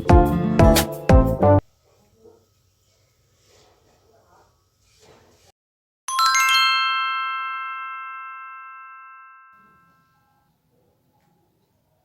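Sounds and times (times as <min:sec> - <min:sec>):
bell-like chime notes: 0:06.1 - 0:10.3.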